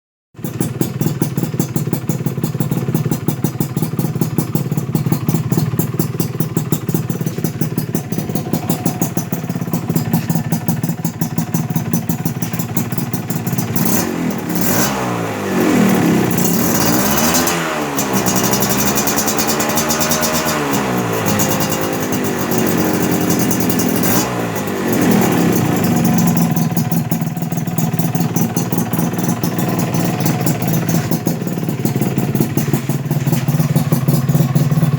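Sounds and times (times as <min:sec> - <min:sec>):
two-stroke motorcycle engine revving: 0:00.4 - 0:34.9.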